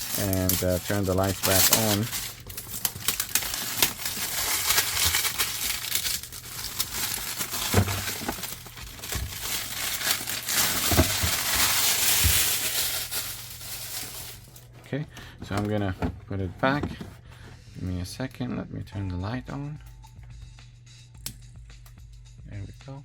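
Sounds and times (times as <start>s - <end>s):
plastic shrink wrap crinkling: 0.0s - 14.8s.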